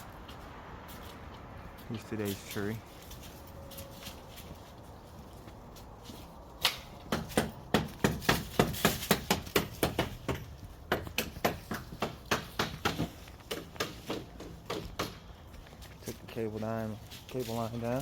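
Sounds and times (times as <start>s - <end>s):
sharp knocks: 6.6s - 15.2s.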